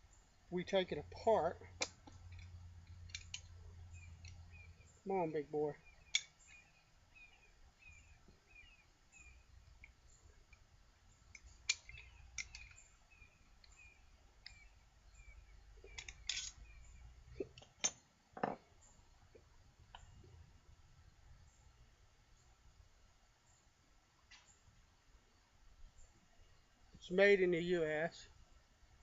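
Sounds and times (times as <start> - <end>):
metal plane parts clicking: 1.8 - 3.6, 11.3 - 12.8, 15.8 - 16.6.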